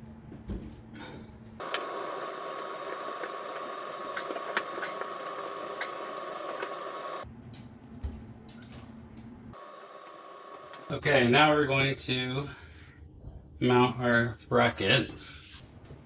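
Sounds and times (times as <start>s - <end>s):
mechanical whirring with high tone: 1.6s - 7.2s.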